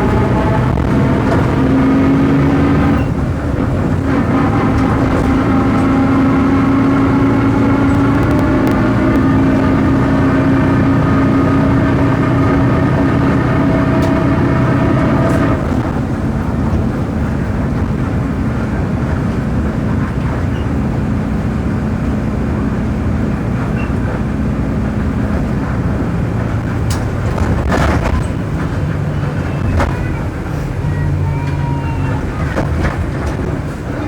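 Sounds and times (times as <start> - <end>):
diesel bus engine running: 0.0 - 34.0
differential growl: 4.1 - 15.7.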